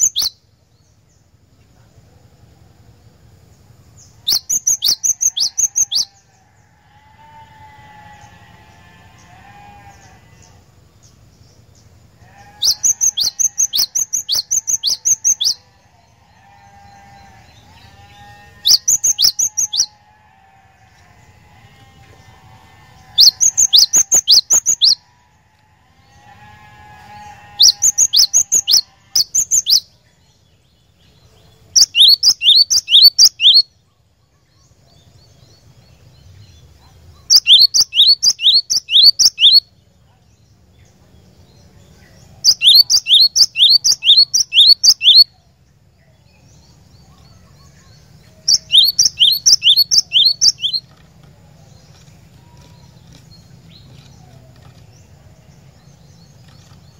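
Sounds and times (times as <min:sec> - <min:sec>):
bird singing whistled notes: 0:00.0 - 0:00.4, 0:04.2 - 0:06.1, 0:12.6 - 0:15.6, 0:18.6 - 0:19.9, 0:31.8 - 0:33.7, 0:37.3 - 0:39.7, 0:42.5 - 0:45.3, 0:47.1 - 0:50.8.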